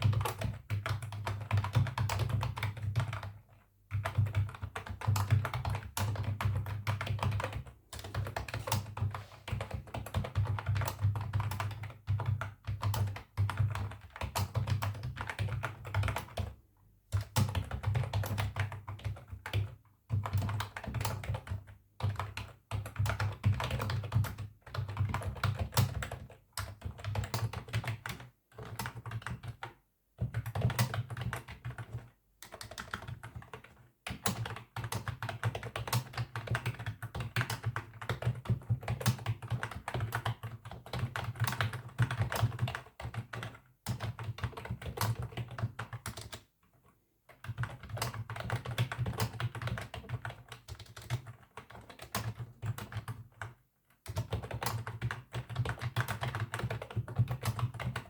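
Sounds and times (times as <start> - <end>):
typing on computer keyboard: 0.0 - 58.0.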